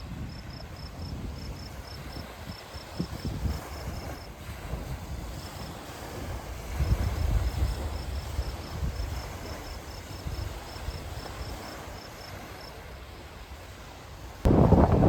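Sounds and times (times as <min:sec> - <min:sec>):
wind buffeting microphone: 0:00.0 - 0:11.7, 0:14.4 - 0:15.0
insects chirping: 0:00.1 - 0:04.3
low uneven rumble: 0:14.5 - 0:15.0.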